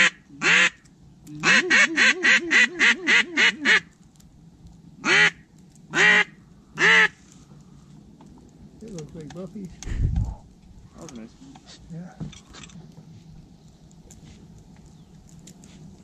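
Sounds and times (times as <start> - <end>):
duck call quacks: 0.0 - 0.8, 1.4 - 3.8, 5.0 - 7.2.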